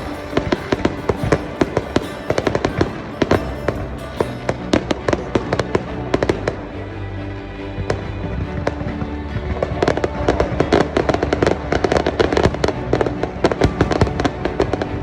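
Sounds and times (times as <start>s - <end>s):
fireworks bursting: 0.0s - 4.8s
music playing: 0.0s - 15.0s.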